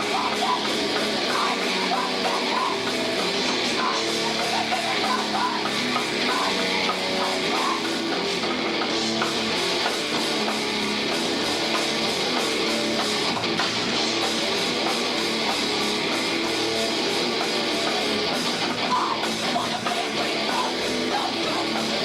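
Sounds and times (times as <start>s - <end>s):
live rock band playing: 0.0s - 22.0s.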